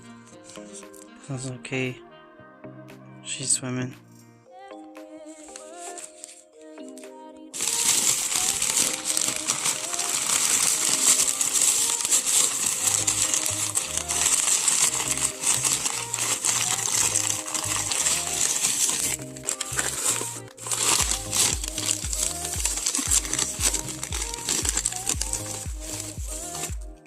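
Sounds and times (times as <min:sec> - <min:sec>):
packing wrap crinkling: 0:05.5 - 0:06.4, 0:07.6 - 0:27.0
background music with bass: 0:12.8 - 0:27.0.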